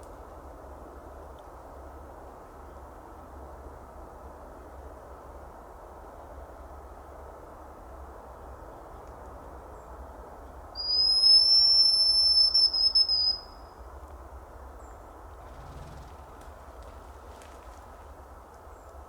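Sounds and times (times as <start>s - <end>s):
grouse whistling call: 10.8s - 13.6s.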